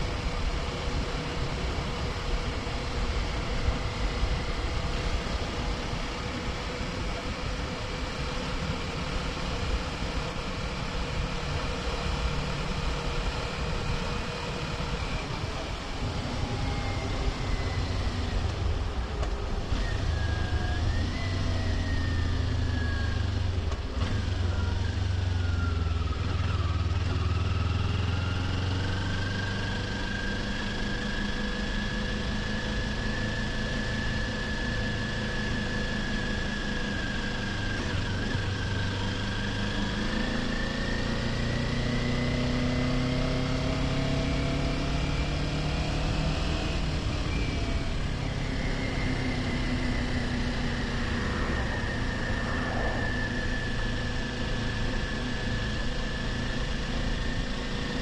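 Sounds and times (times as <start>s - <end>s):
motorcycle engine running: 0.0s - 58.0s
wind noise: 49.6s - 55.1s.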